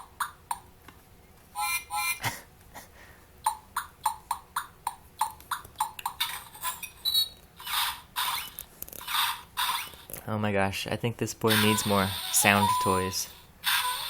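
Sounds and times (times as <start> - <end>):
toy speaker steam train chuffs: 11.5 - 14.0.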